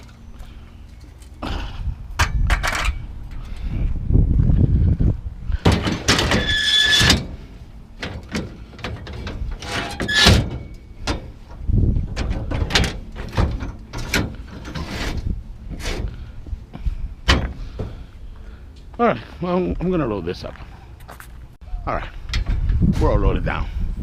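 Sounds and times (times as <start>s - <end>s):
metal scrap scraping: 5.6s - 11.4s, 12.8s - 16.2s
metal knocks and clanks: 5.6s - 15.2s
high metal squeal: 6.1s - 7.5s, 9.6s - 10.9s.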